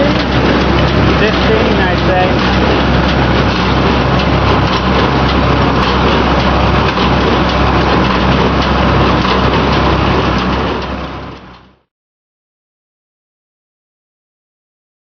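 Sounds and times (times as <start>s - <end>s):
baler machinery clattering: 0.0s - 11.9s
tractor engine running under load: 0.0s - 11.9s.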